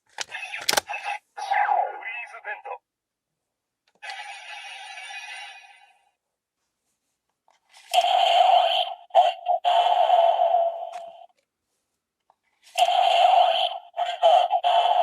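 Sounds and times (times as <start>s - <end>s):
toy electronic sound effects: 4.0s - 5.9s, 12.7s - 15.0s.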